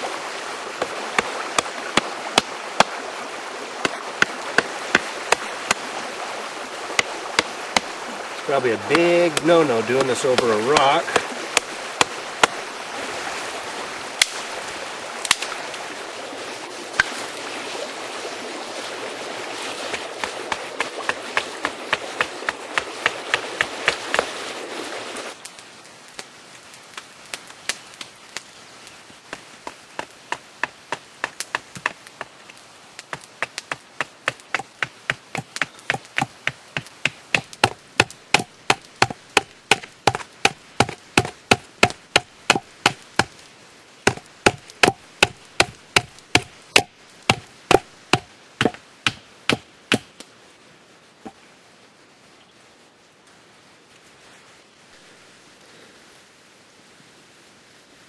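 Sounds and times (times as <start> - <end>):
steady hiss: 0.0 - 58.0
antler wedges tapped into wood: 33.4 - 43.3, 44.1 - 50.1.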